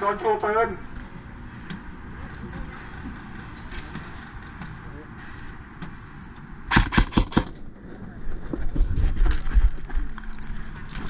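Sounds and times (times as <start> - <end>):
airsoft gun shots: 6.7 - 7.6.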